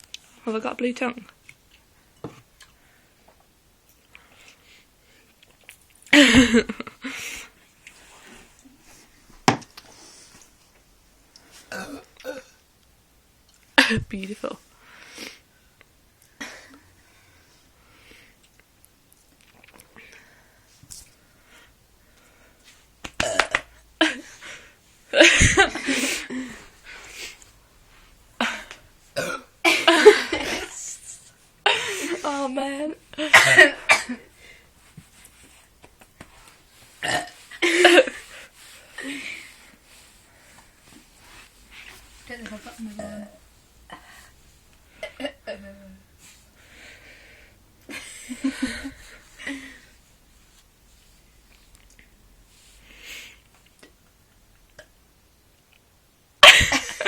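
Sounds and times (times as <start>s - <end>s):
coughing: 11.7s - 12.6s, 23.2s - 24.3s, 28.4s - 30.8s, 33.2s - 34.3s, 56.4s - 57.0s
person burping: 11.7s - 12.6s, 29.2s - 30.7s, 37.0s - 37.4s
people burping: 29.2s - 30.2s.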